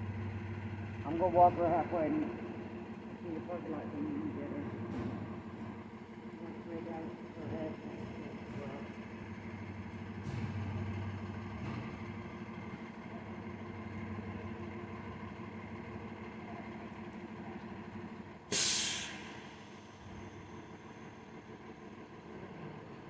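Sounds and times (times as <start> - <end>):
loud air hiss: 18.5 - 19.7.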